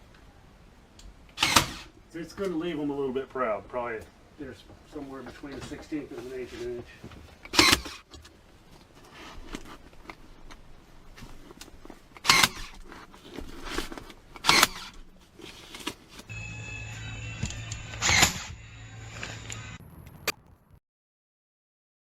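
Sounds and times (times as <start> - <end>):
nail gun firing into wood: 1.4 - 1.9, 7.5 - 8.0, 12.2 - 12.8, 14.4 - 14.9
low hum: 16.3 - 20.8.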